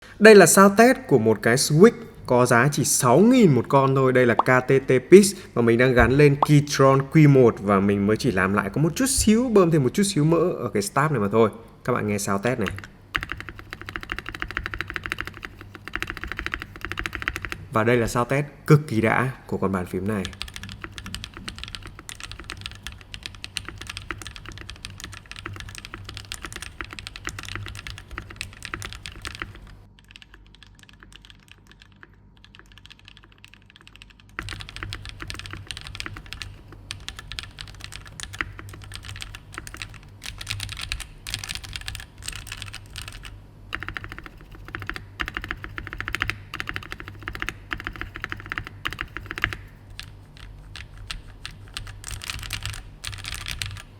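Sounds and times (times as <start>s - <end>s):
fast mechanical keyboard typing: 12.0s - 18.3s, 19.8s - 53.9s.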